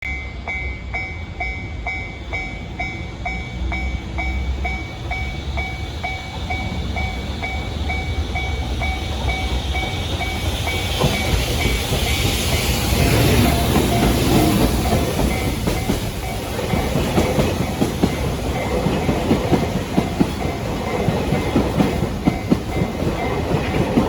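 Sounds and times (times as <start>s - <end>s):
freight train rumble on rails: 0.0s - 24.0s.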